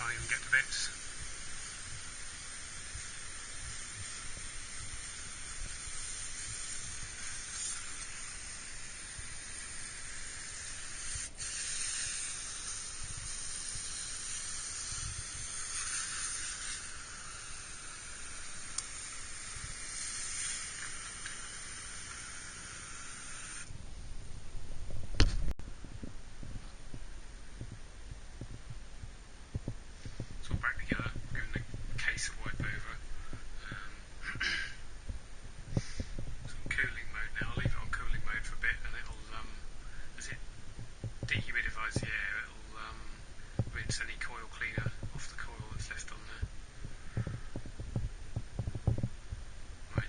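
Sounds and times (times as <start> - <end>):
water spray jet hissing: 0.0 - 23.7.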